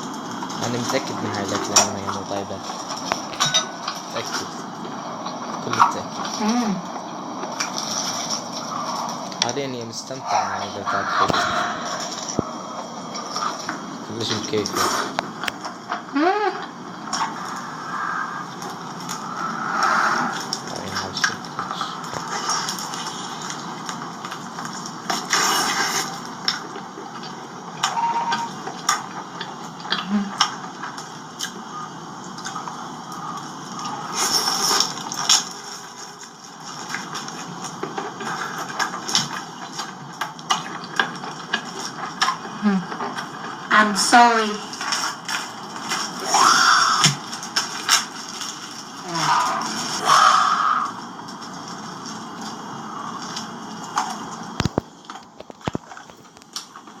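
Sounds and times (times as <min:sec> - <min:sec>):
steady hiss: 0:00.0 - 0:57.0
chewing crunches: 0:32.3 - 0:43.3, 0:44.8 - 0:56.9.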